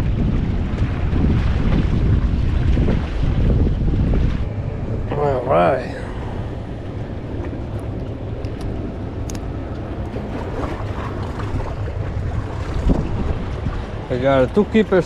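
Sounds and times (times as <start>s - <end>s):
wind buffeting microphone: 0.0s - 15.0s.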